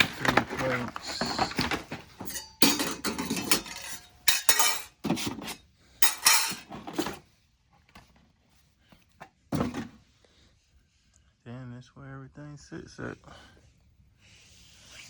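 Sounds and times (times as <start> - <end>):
metal plates clattering: 0.0 - 7.2.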